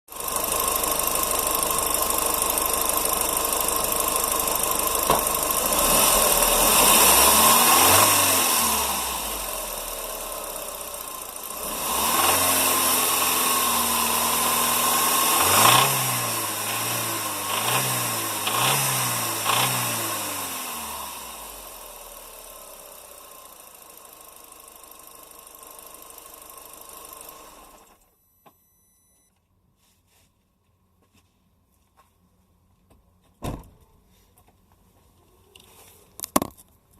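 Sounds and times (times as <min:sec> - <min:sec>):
car engine idling and revving: 0:00.1 - 0:28.6.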